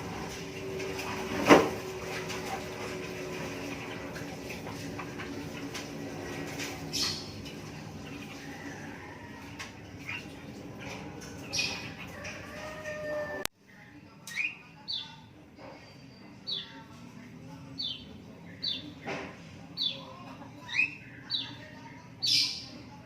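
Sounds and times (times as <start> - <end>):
lovebirds chirping: 6.8 - 7.4, 10.0 - 13.4.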